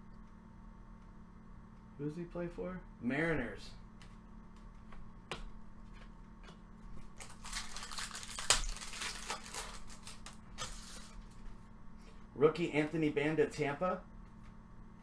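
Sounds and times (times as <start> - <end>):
foil wrappers crinkling: 7.0 - 11.5.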